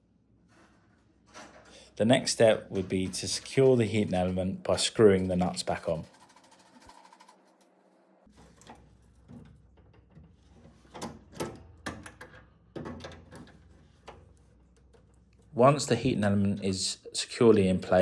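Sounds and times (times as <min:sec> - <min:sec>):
hand tools clicking and knocking: 0:02.4 - 0:07.6.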